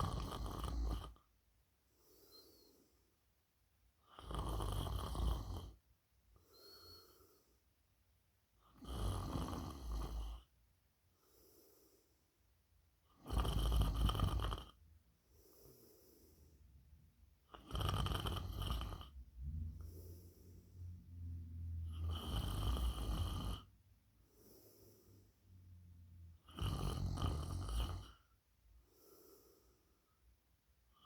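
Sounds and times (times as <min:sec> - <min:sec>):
person snoring: 0:00.0 - 0:01.2, 0:04.2 - 0:05.8, 0:08.8 - 0:10.5, 0:13.2 - 0:14.8, 0:17.5 - 0:23.7, 0:24.3 - 0:28.3
soft breaths: 0:00.0 - 0:03.4, 0:05.7 - 0:07.9, 0:11.1 - 0:12.6, 0:13.6 - 0:31.0.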